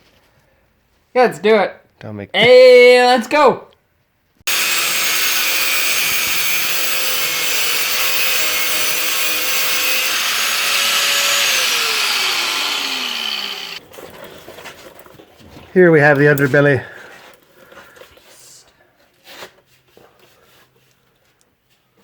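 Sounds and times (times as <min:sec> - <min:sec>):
power tool motor spinning down: 0:04.5 - 0:13.8.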